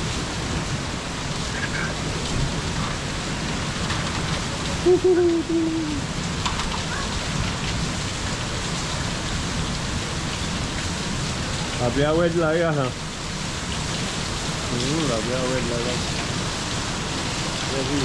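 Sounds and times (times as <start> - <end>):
heavy rain falling: 0.0 - 18.0
short wavering voice-like sound: 4.8 - 6.1.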